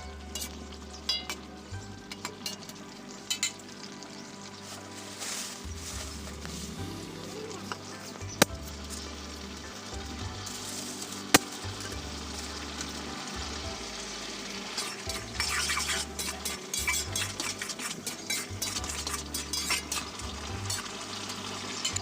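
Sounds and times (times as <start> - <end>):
spatula scraping a metal pan: 0.3 - 1.4, 14.7 - 21.0.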